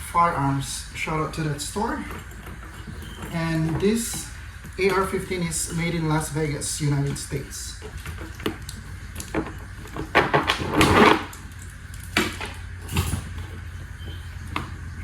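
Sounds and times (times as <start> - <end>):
handling clicks and knocks: 0.0 - 15.0.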